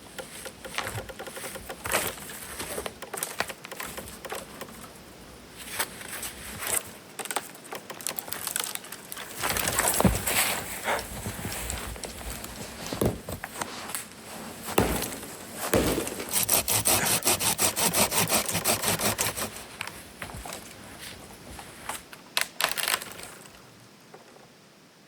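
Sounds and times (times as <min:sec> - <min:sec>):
wood knocking: 0:00.0 - 0:04.9, 0:14.7 - 0:17.4
hand saw cutting wood: 0:00.4 - 0:04.7, 0:14.8 - 0:19.6.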